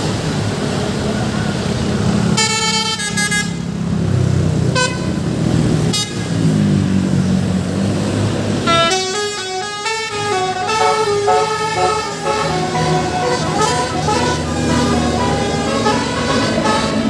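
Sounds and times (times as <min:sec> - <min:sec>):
bus engine running: 0:00.0 - 0:17.0
bus horn toots: 0:02.3 - 0:03.7, 0:04.7 - 0:06.4, 0:08.6 - 0:17.0
horn melody: 0:08.7 - 0:17.0.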